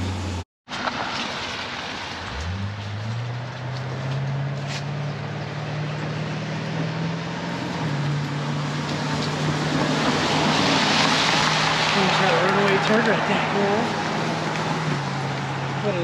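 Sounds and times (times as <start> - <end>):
road noise: 0.0 - 16.0
vehicle engine running: 2.1 - 16.0.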